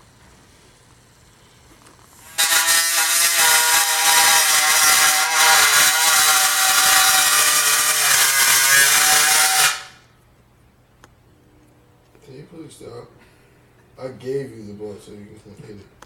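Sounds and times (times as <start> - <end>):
harsh raspy buzzing noisemaker: 2.2 - 10.0.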